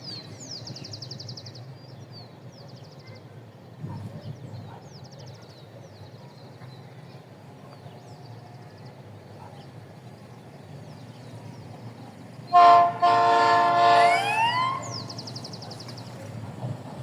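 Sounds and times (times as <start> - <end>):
locomotive horn blasts: 12.5 - 15.3
siren rising in pitch: 13.7 - 15.2.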